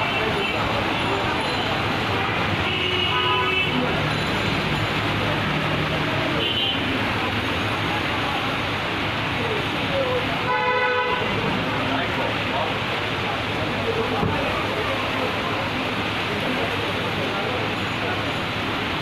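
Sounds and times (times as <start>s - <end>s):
busy street traffic: 0.0s - 19.0s
vehicle horns honking: 2.1s - 3.9s, 6.4s - 6.9s, 10.4s - 11.4s.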